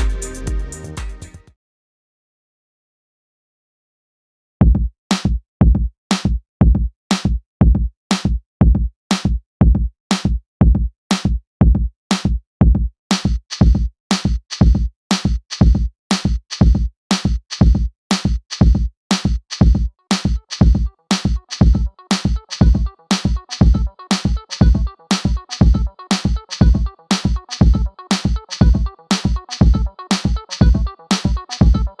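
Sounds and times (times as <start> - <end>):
drum machine beat: 0.0 - 1.4, 4.6 - 32.0.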